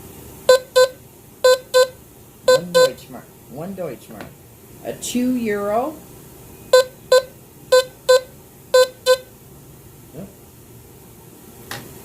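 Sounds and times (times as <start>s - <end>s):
metal detector beeps: 0.5s - 3.0s, 6.7s - 9.3s.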